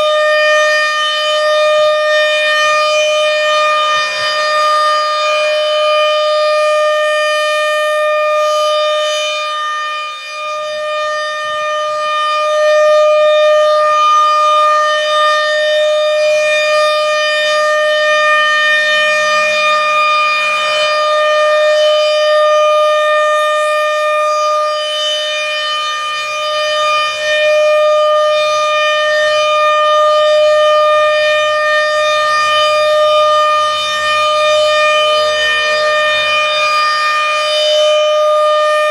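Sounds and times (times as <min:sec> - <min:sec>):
rotating warning siren: 0:00.0 - 0:38.9.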